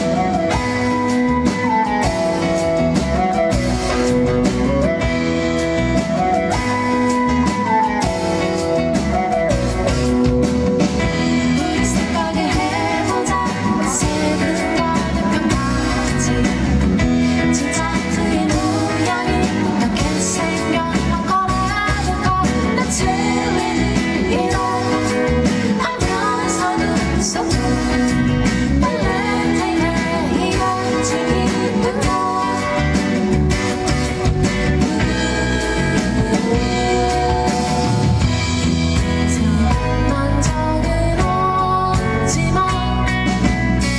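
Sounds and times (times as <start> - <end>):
guitar and band accompaniment: 0.0 - 43.9
woman singing: 11.2 - 38.4, 39.0 - 43.6.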